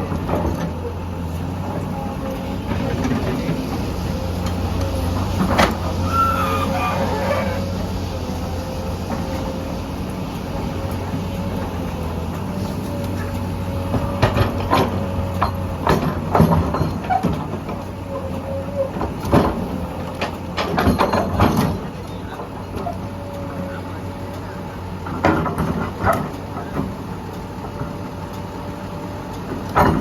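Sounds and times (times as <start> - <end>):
excavator diesel engine running: 0.0 - 30.0
sharp metal knocks and clanks: 13.9 - 17.8, 20.2 - 21.9.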